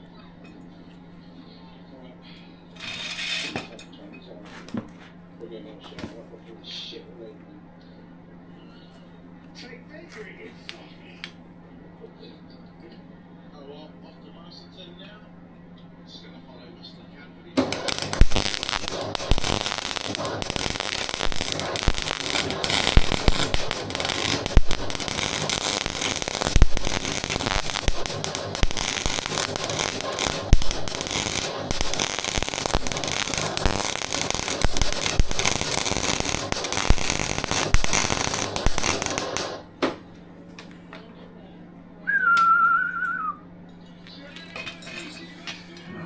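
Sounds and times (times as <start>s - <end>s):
welding arc crackling: 2.8s - 3.7s, 17.6s - 39.7s.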